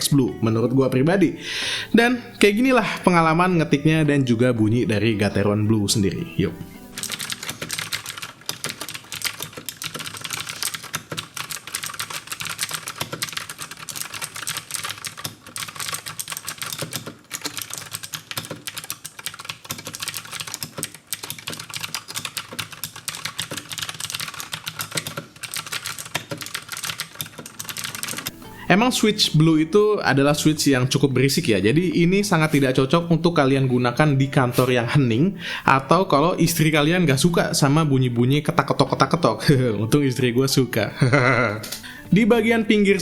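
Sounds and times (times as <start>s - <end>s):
mechanical keyboard typing: 6.8s - 28.3s.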